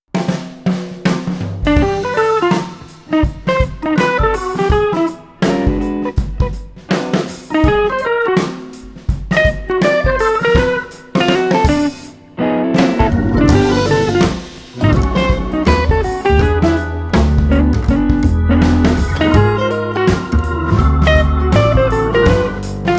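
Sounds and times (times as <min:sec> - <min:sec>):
drum kit beat: 0:00.1 - 0:12.2, 0:12.8 - 0:22.9
plucked guitar melody: 0:12.4 - 0:22.9.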